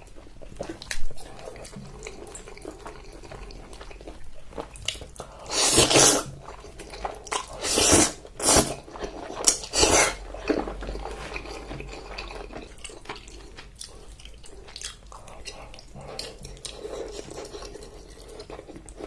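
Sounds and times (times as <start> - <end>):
wet chewing: 0.0 - 19.0
loud bites or slurps: 5.5 - 6.3, 7.6 - 10.2.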